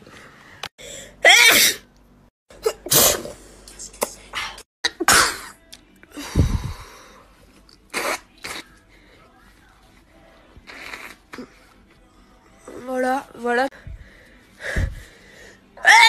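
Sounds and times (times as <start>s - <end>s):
girl sneezing: 1.2s - 1.8s, 2.6s - 3.3s.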